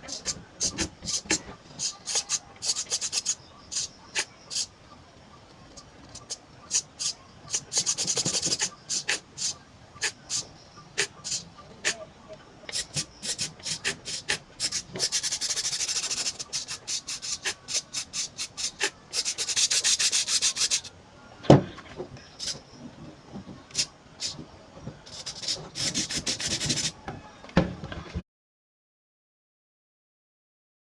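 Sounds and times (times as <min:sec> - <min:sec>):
rapid clicking rattle: 0:00.0 - 0:04.8, 0:05.4 - 0:12.0, 0:12.7 - 0:20.9, 0:25.0 - 0:27.0.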